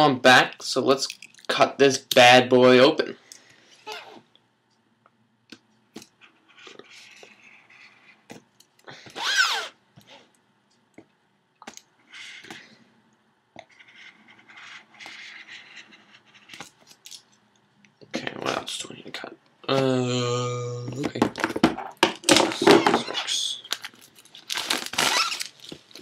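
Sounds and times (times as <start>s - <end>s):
packaging scraping and rustling: 22.3s - 26.0s.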